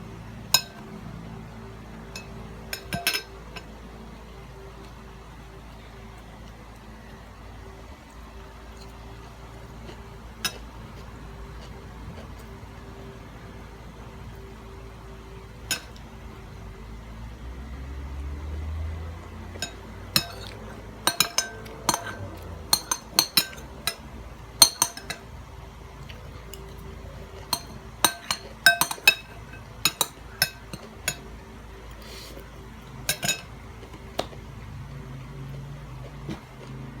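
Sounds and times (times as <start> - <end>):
faint steady hum: 0.0 - 37.0
utensil clinking against dish: 2.2 - 3.7, 19.6 - 25.3, 26.4 - 31.3, 33.0 - 33.5.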